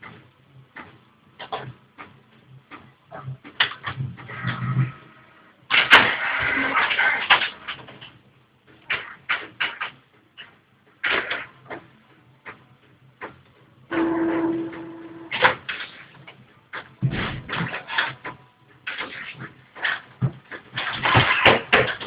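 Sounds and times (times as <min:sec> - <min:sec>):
printer clicks and clacks: 0:00.0 - 0:04.5, 0:05.7 - 0:12.6, 0:13.2 - 0:22.0
printer motor whine: 0:13.9 - 0:15.6.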